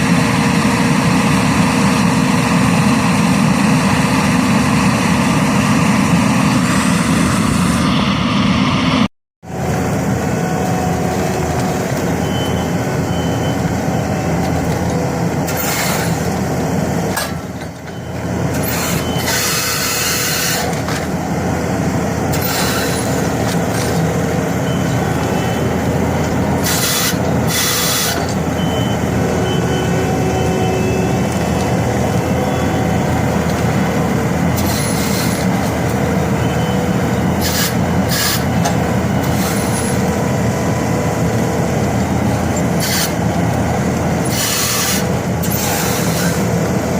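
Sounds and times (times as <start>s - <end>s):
loud engine drone: 0.0s - 46.9s
stump grinder grinding: 9.6s - 17.2s, 18.2s - 46.9s.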